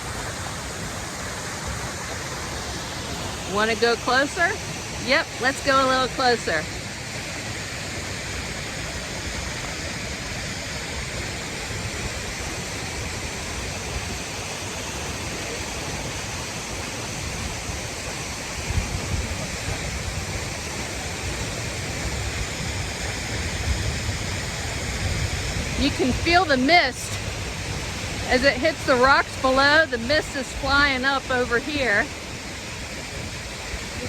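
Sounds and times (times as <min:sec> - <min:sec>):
waterfall roaring onto rocks: 0:00.0 - 0:34.0
wind buffeting microphone: 0:15.3 - 0:34.0.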